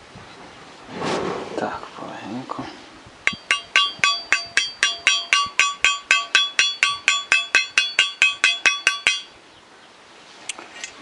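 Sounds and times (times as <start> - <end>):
hammer tapping metal: 3.3 - 9.3.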